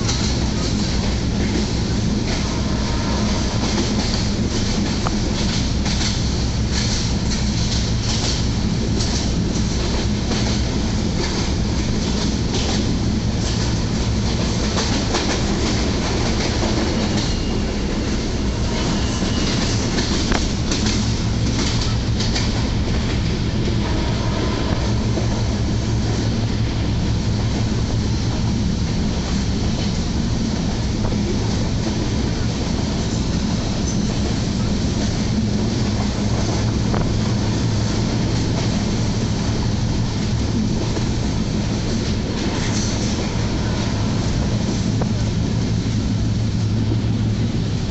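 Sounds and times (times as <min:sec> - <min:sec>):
wheels clacking over rail joints: 0:00.0 - 0:24.1
train low rumble: 0:00.0 - 0:47.9.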